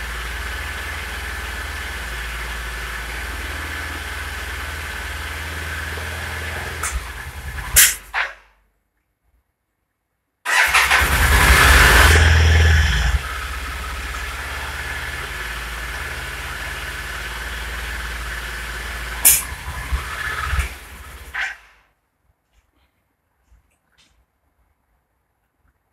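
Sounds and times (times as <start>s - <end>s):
motorcycle engine starting and idling: 0.0s - 8.2s, 10.5s - 21.4s
engine backfire pops: 6.6s - 8.4s, 19.2s - 21.4s.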